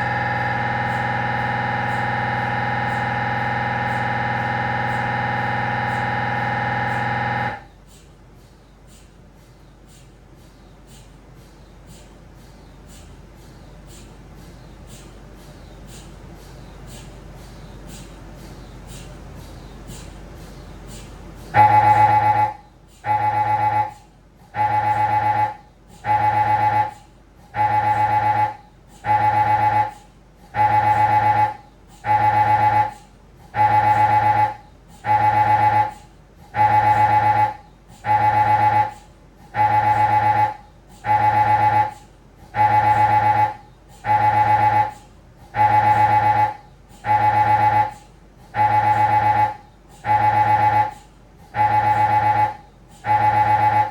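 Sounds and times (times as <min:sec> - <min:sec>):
mri scanner pulsing buzz: 0:00.0 - 0:07.7, 0:20.4 - 0:53.9
low steady hum: 0:00.0 - 0:53.9.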